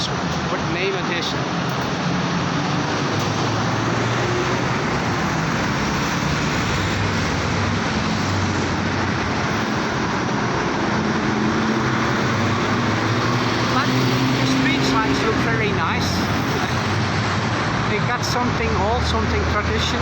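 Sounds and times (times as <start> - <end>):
passing vehicles rushing: 0.0 - 20.0.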